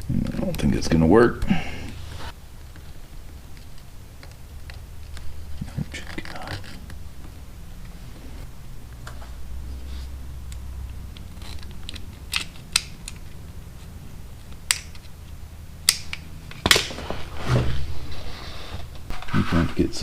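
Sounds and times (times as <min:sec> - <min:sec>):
low steady hum: 0:00.0 - 0:20.0
hand tools clicking and tapping: 0:10.5 - 0:13.3, 0:15.9 - 0:16.8.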